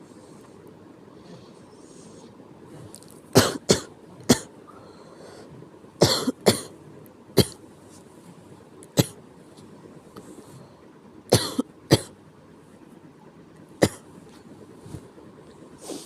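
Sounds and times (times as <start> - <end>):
person coughing: 3.4 - 4.5, 6.0 - 6.7, 7.4 - 7.6, 11.3 - 12.1, 13.8 - 14.0.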